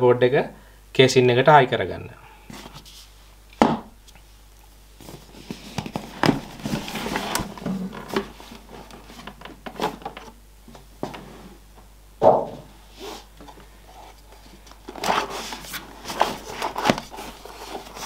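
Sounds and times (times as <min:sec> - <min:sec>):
plastic packaging crinkling: 0:05.0 - 0:10.4, 0:14.2 - 0:18.0.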